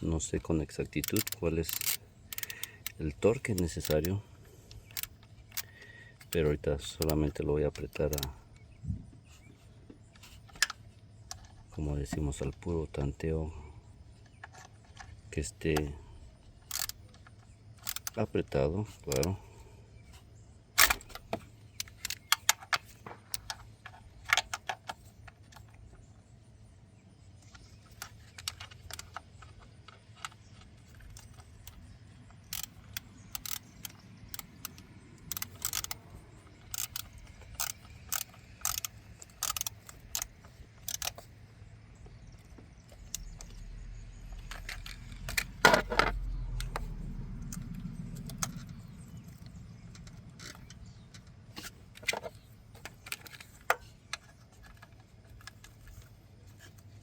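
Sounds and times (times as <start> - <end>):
metal hand tools clicking: 1.0 - 4.2, 4.8 - 7.2, 16.7 - 17.0, 17.8 - 18.2, 32.5 - 36.0, 36.6 - 41.3
low rumble: 42.4 - 52.6
metallic clatter: 42.8 - 53.9.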